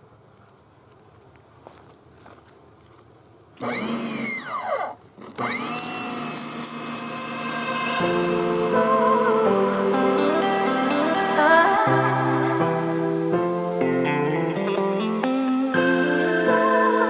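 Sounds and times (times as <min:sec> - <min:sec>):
pressure washer whining: 0:03.6 - 0:11.8
music: 0:07.4 - 0:17.0.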